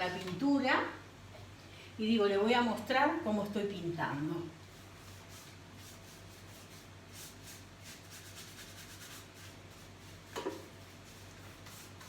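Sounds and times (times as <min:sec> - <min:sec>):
paint brush strokes rubbing: 0:04.6 - 0:12.0.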